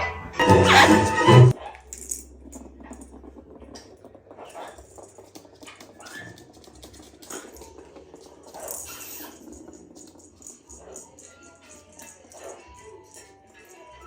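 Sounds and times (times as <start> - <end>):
parrot scratching plastic toy: 4.3 - 14.0.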